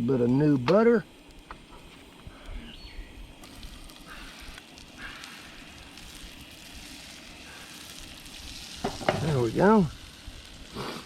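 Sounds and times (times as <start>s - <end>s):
butter sizzling in frying pan: 0.0s - 11.0s.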